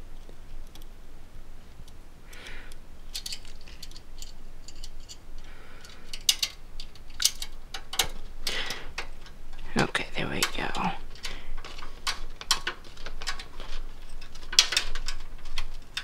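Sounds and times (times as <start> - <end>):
soft rustles: 10.5 - 16.0.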